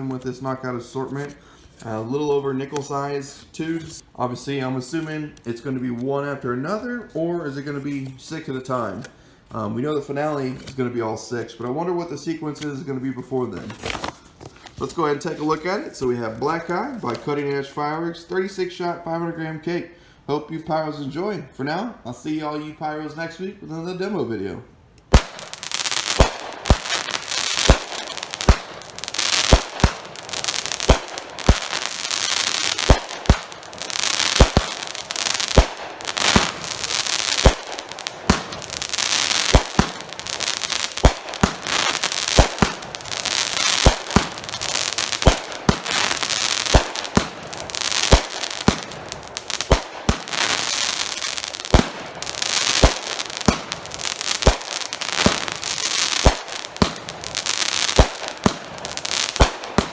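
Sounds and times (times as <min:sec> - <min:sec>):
firework crackling: 0:25.0 - 0:59.9
firework shots: 0:25.0 - 0:59.9.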